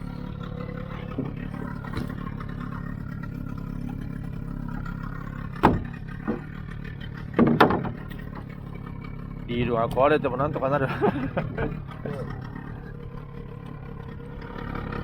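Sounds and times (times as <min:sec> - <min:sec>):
boat engine humming: 0:00.0 - 0:15.0.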